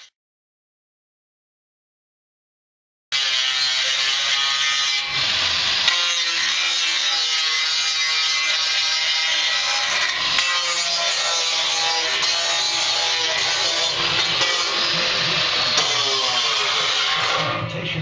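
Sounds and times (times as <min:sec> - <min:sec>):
grinder whining on metal: 0:03.1 - 0:18.0.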